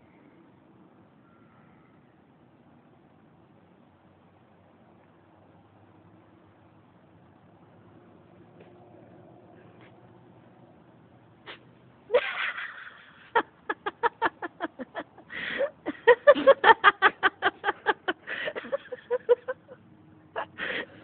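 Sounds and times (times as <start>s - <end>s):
puppy sneezing: 11.4s - 11.7s
person laughing hard: 12.1s - 19.8s.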